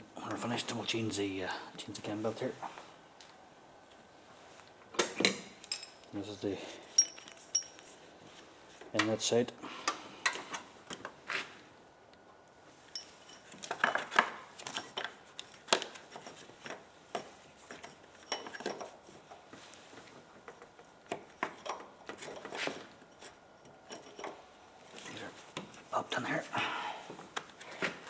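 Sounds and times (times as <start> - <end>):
metal tools clinking: 5.6 - 6.1, 6.9 - 7.9, 12.9 - 14.0.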